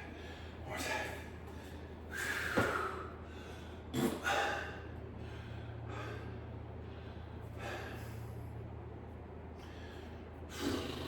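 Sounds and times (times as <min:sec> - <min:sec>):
man breathing hard: 0:00.0 - 0:08.6.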